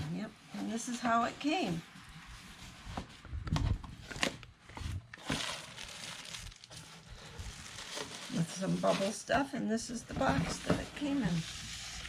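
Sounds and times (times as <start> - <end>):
bubble wrap and plastic crinkling: 4.0 - 9.4, 10.2 - 12.0.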